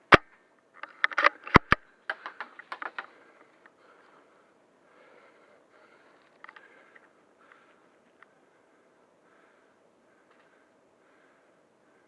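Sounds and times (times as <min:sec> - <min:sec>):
rifle handling clicks: 0:00.8 - 0:03.1.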